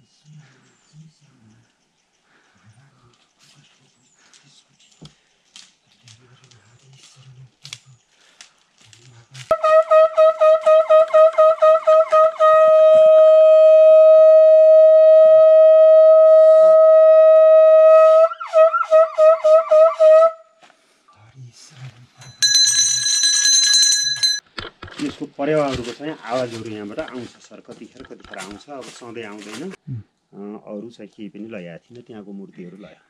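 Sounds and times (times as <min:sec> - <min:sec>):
horn blowing: 0:09.5 - 0:20.4.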